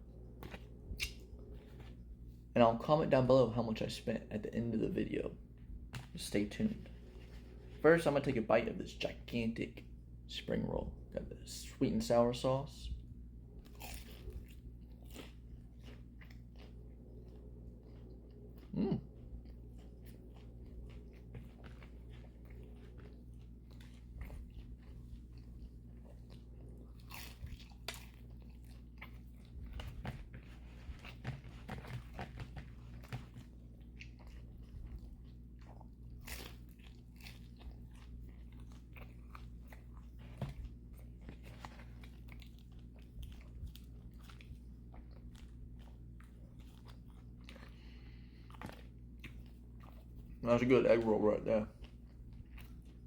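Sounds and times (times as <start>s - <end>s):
steady low hum: 0.0s - 53.0s
crunchy chewing: 13.5s - 53.0s.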